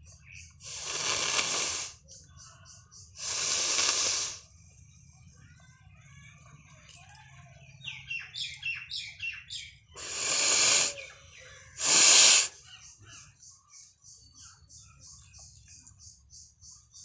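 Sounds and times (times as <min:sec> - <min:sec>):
bird chirping: 0:00.0 - 0:17.0
forceful blowing through nose: 0:00.6 - 0:02.0, 0:03.2 - 0:04.4, 0:10.0 - 0:11.0, 0:11.8 - 0:12.6.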